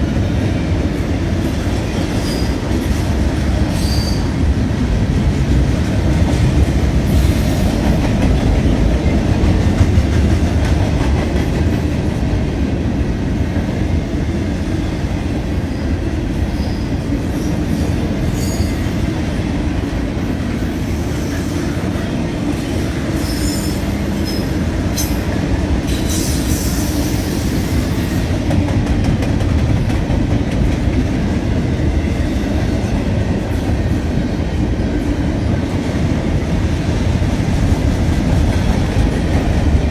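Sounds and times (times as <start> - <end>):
train rumbling past: 0.0 - 39.9
train wheels squealing: 2.0 - 2.7, 3.7 - 4.4, 16.5 - 19.1, 22.7 - 28.3.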